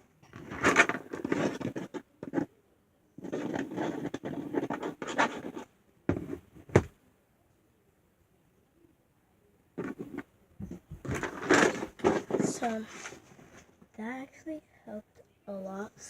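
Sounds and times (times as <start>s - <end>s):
slime scraping and rustling: 0.2s - 2.5s, 3.2s - 5.7s, 11.0s - 13.7s.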